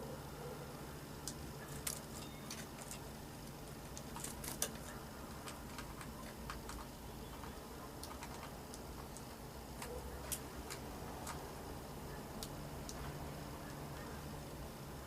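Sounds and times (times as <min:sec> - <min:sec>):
low steady hum: 0:00.0 - 0:15.0
sharp clicks and ticks: 0:01.2 - 0:11.5.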